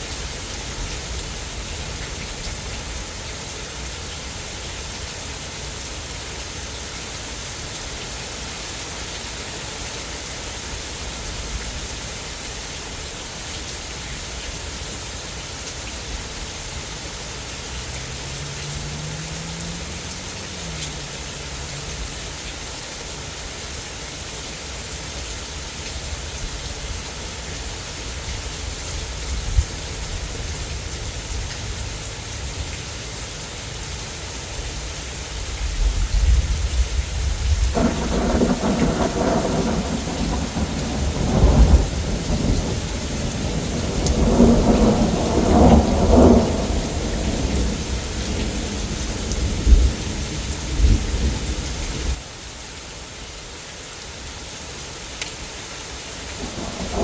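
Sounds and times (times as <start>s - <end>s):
heavy rain: 0.0s - 57.0s
thunder rumbling: 36.1s - 52.2s, 56.4s - 57.0s.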